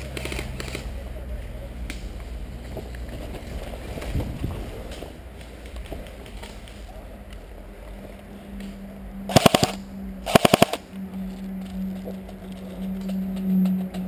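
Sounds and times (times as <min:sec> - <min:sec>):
airsoft rifle bursts: 0:09.3 - 0:10.8.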